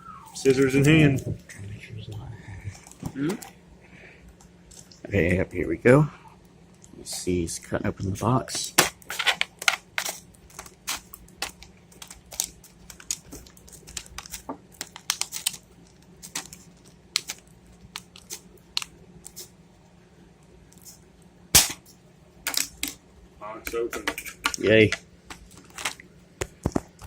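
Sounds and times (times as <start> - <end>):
packaging crinkling: 8.7 - 19.5, 25.3 - 27.0
loud snap: 21.6 - 21.9.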